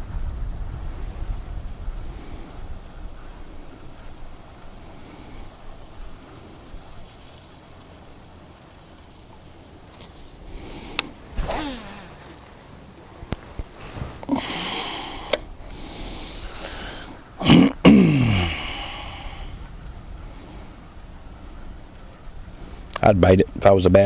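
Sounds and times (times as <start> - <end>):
wind on microphone: 0.0 - 7.2, 10.2 - 24.0
man's low vocal noise: 13.4 - 20.4.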